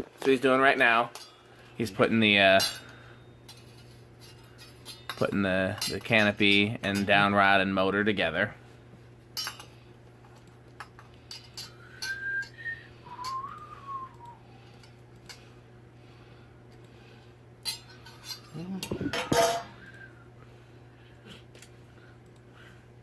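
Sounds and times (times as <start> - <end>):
steady low hum: 0.0 - 23.0
whistle-like tones: 11.9 - 14.4
metal parts clinking and knocking: 17.7 - 19.7.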